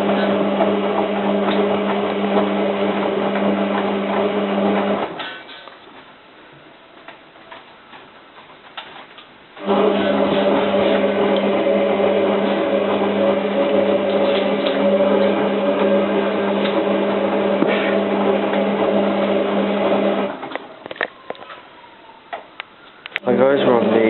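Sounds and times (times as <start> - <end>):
washing machine drum motor whining: 0.0 - 5.2, 9.5 - 24.0.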